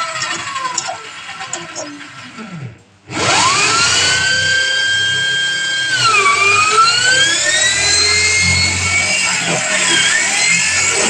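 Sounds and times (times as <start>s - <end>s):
power tool motor whining: 0.0s - 11.0s.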